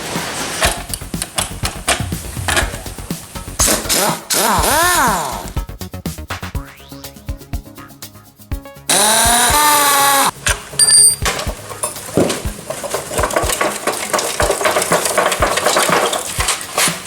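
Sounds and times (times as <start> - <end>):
background music with a beat: 0.0 - 17.0
power tool whine: 3.7 - 5.5, 8.9 - 10.4
scraping and clinking on metal: 10.4 - 17.0.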